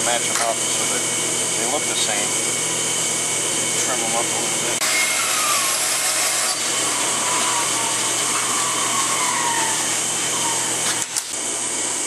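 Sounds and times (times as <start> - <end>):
power tool cutting metal: 3.9 - 11.9.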